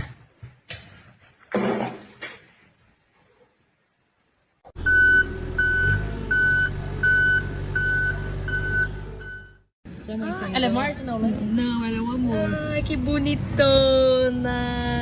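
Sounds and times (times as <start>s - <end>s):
low engine-like hum: 4.8s - 10.0s.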